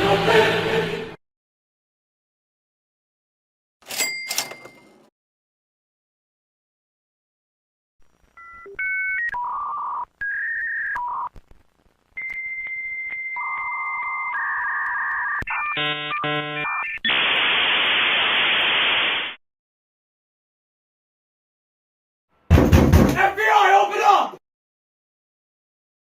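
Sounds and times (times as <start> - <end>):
long high electronic tone: 15.8 - 16.7.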